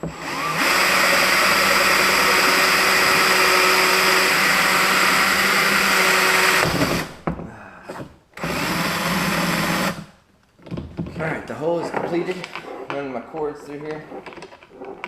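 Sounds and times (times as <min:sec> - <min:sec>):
power drill boring through plastic: 0:00.0 - 0:07.2, 0:07.9 - 0:10.1.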